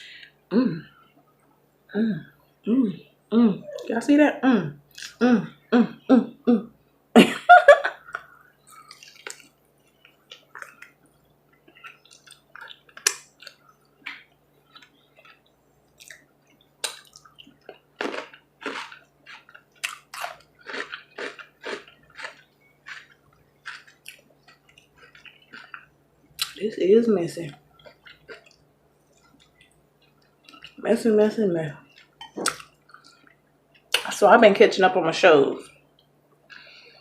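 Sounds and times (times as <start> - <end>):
chewing and wet mouth smacks: 8.7 - 26.6, 27.5 - 30.8, 31.9 - 34.1.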